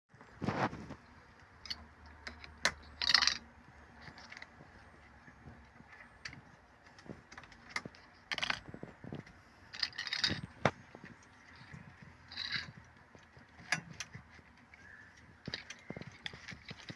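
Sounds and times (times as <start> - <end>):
rattling scrapes: 7.9 - 14.4.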